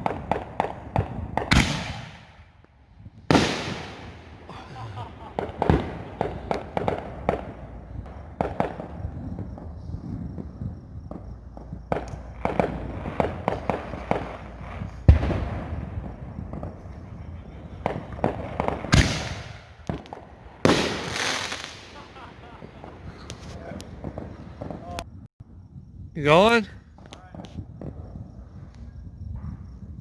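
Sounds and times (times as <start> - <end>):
fireworks popping and crackling: 0.0 - 25.2
loud sharp firework blasts: 0.0 - 25.3
heavy low firework bang: 15.1 - 16.8.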